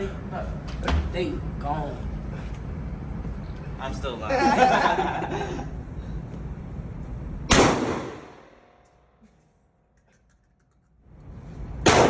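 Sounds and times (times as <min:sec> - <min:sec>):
gunshots with echo: 0:07.5 - 0:08.5.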